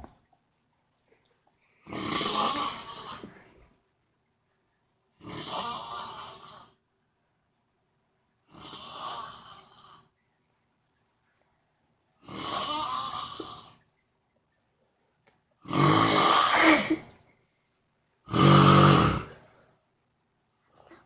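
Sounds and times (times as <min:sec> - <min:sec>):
man snoring: 0:01.9 - 0:03.3, 0:05.2 - 0:06.8, 0:08.5 - 0:10.0, 0:12.2 - 0:13.8, 0:15.7 - 0:17.0, 0:18.3 - 0:19.4.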